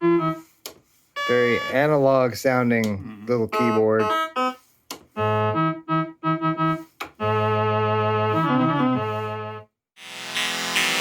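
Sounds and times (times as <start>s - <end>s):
analog keyboard notes and chord: 5.2s - 11.0s.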